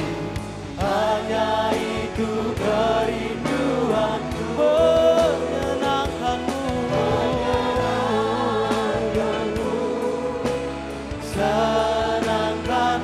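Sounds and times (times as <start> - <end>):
band accompanying: 0.0 - 13.0
voices singing praise song: 0.0 - 13.0.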